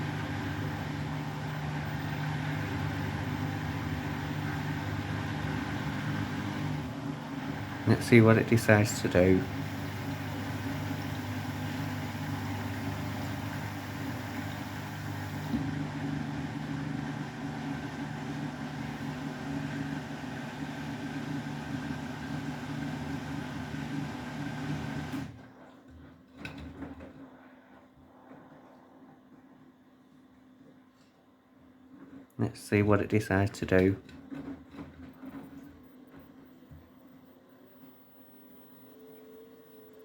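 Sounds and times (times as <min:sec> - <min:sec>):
washing machine motor humming: 0:00.0 - 0:27.4.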